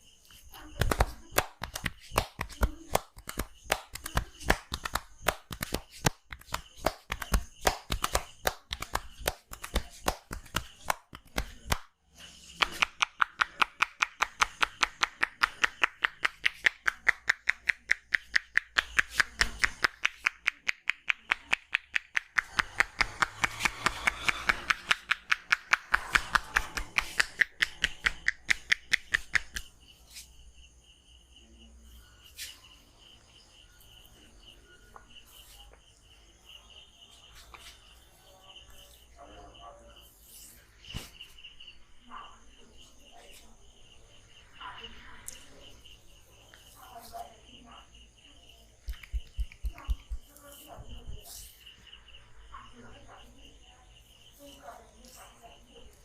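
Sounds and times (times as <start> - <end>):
hands clapping on body: 0.6 - 11.9, 12.5 - 29.7, 48.8 - 50.3.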